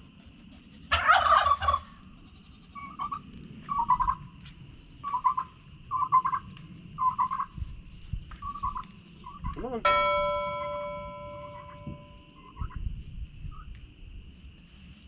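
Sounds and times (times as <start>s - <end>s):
fowl warbling calls: 0.9s - 4.2s, 5.0s - 7.5s, 8.4s - 9.6s
high-pitched drone: 9.9s - 12.7s.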